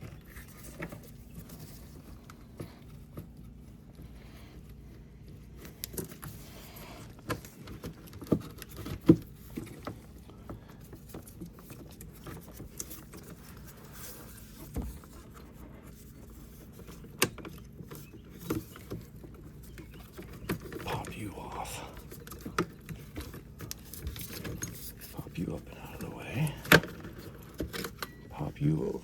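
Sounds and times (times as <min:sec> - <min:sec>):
steady low hum: 0:18.8 - 0:29.0.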